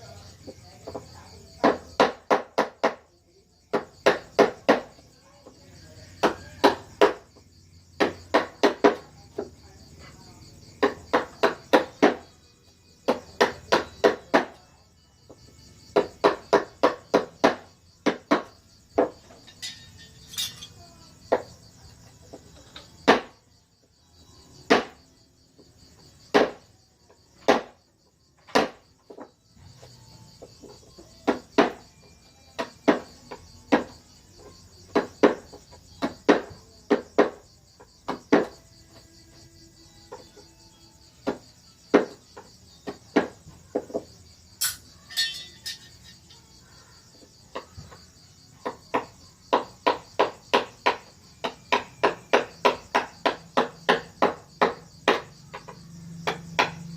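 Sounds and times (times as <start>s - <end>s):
crickets chirring: 0.0s - 56.9s
mallet striking chisel into wood: 48.6s - 56.9s.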